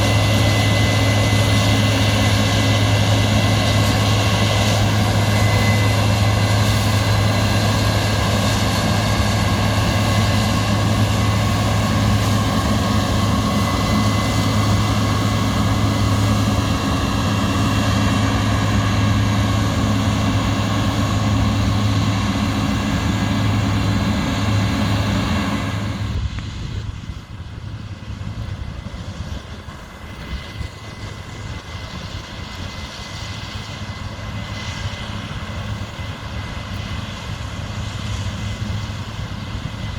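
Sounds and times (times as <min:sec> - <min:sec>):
heavy diesel machinery droning: 0:00.0 - 0:26.4.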